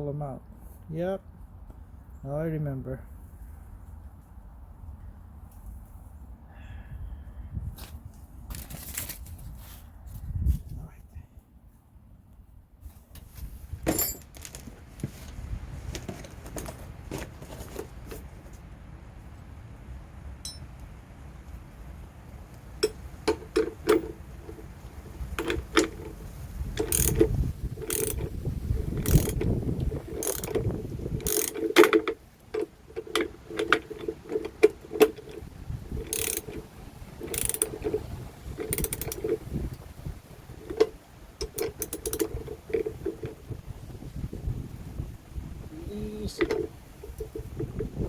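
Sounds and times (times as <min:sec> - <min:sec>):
mechanical clicks and rattles: 0:22.8 - 0:39.8, 0:40.6 - 0:43.4.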